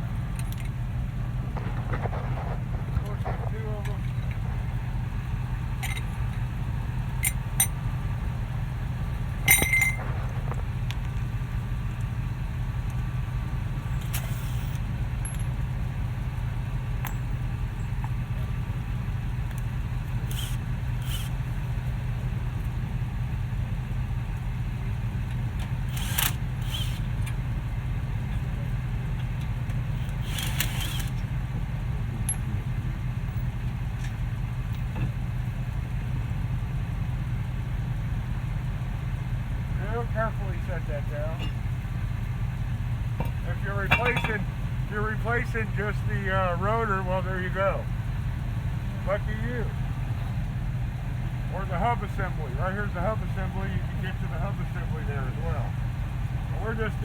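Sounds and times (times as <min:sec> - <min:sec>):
steady low hum: 0:00.0 - 0:57.0
metal tools clinking: 0:05.8 - 0:06.4, 0:07.2 - 0:07.9, 0:09.4 - 0:10.2, 0:14.0 - 0:15.7, 0:43.2 - 0:44.6.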